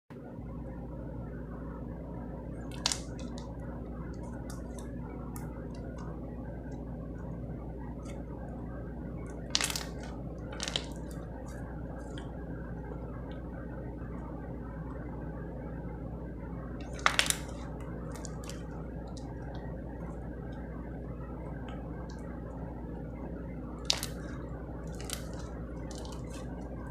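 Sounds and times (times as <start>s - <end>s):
steady low hum: 0.1s - 26.9s
slime squishing: 2.5s - 13.6s, 16.7s - 26.9s.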